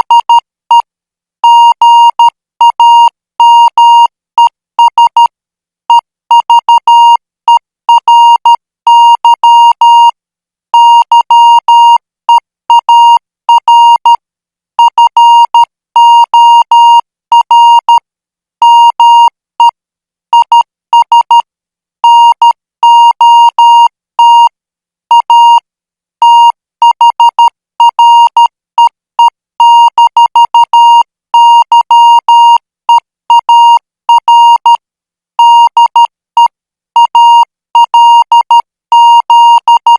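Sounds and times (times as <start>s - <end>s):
morse code beeps: 0.0s - 0.4s, 33.3s - 34.8s, 35.4s - 39.9s.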